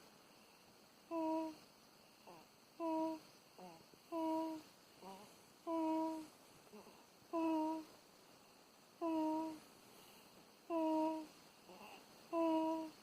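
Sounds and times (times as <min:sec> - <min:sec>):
baby snoring: 0:01.1 - 0:01.6, 0:02.3 - 0:07.9, 0:09.0 - 0:09.6, 0:10.7 - 0:13.0.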